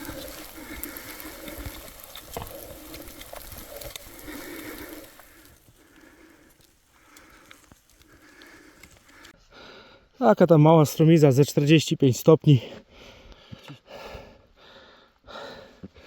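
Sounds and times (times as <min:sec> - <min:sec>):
crunching footsteps: 0:00.0 - 0:09.3
person breathing hard: 0:00.0 - 0:10.2, 0:12.7 - 0:16.0.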